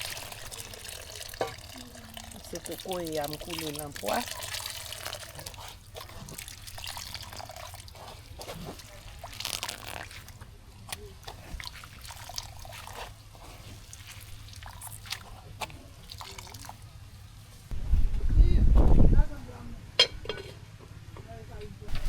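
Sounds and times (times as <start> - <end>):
liquid trickling and dripping: 0.0 - 17.4.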